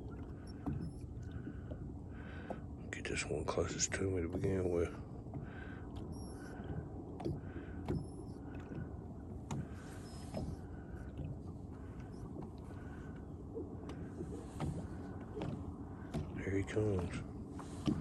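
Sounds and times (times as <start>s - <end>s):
low steady hum: 0.0s - 18.0s
faint short chirp: 6.1s - 6.6s, 8.0s - 8.5s, 9.7s - 10.6s.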